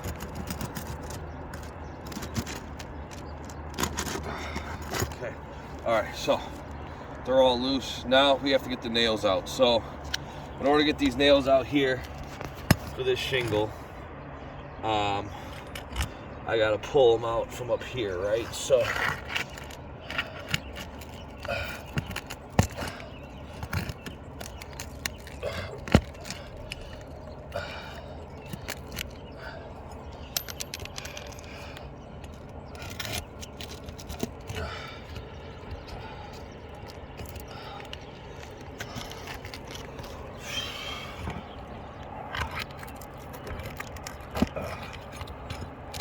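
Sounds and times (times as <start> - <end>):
tool scraping roof shingles: 0.0 - 5.8, 18.4 - 46.0.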